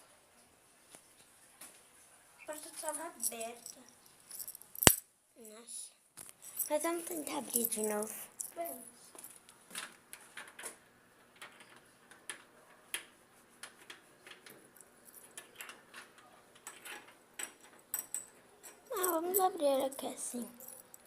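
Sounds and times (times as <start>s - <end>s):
hairpin clicking in a lock: 4.4s - 5.0s.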